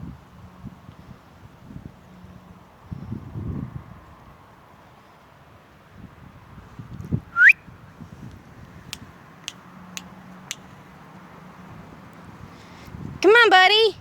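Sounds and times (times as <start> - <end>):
person whistling: 7.4 - 7.6
kissing clicks: 8.9 - 10.7.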